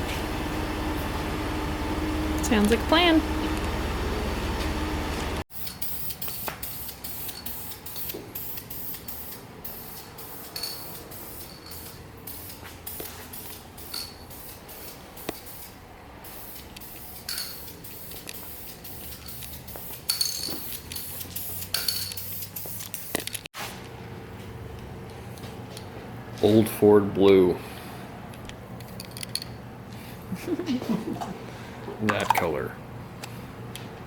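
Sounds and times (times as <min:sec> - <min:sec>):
aerosol spray paint hissing: 0:05.6 - 0:23.2.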